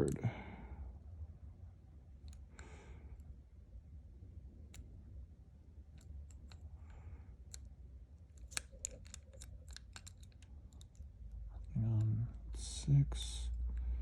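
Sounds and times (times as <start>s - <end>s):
lock pick clicking in padlock: 8.4s - 11.0s.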